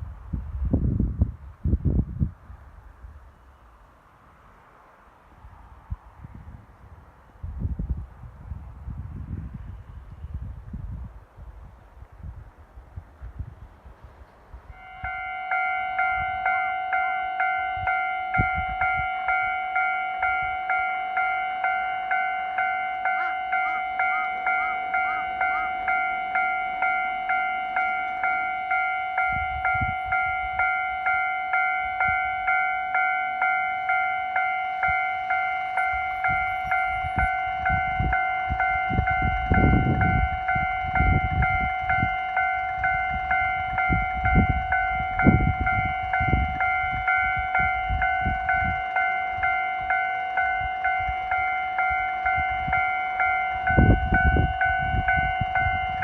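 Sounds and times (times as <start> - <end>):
diesel train rumbling: 0.0 - 56.0
level crossing alarm clanging: 14.8 - 56.0.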